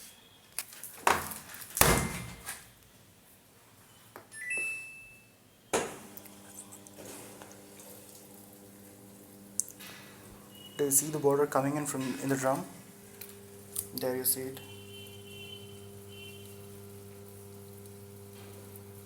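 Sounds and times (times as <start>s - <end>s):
short high beeps: 4.3s - 5.3s
washing machine humming: 5.8s - 19.0s
water filling: 6.8s - 9.8s.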